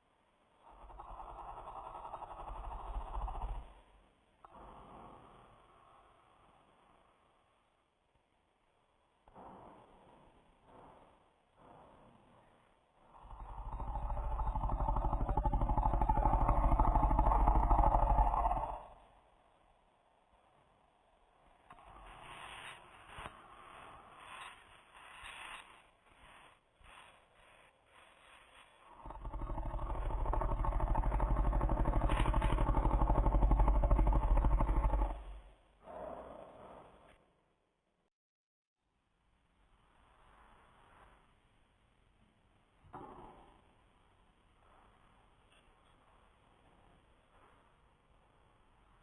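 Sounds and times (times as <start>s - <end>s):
dog snoring: 0.6s - 5.6s, 13.0s - 19.0s, 21.7s - 37.1s.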